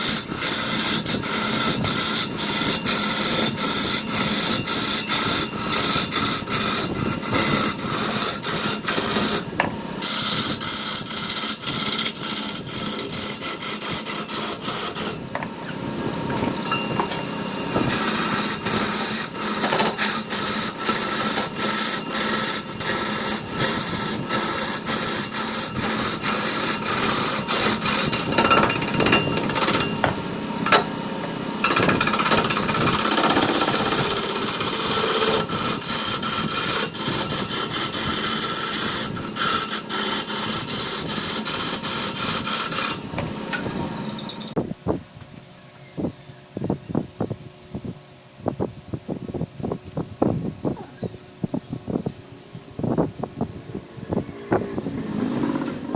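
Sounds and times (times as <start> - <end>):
turning tool scraping wood: 0.0 - 44.6.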